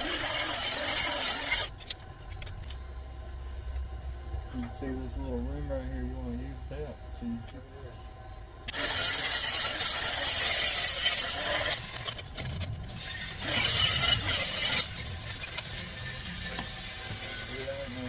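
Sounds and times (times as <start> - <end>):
air grinder on metal tube: 0.0 - 1.8, 8.7 - 18.0.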